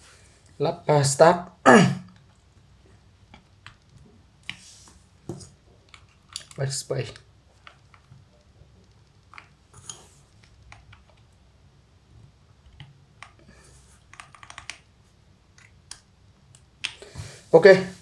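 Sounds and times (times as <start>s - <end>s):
keyboard keys clicking: 14.1s - 14.9s.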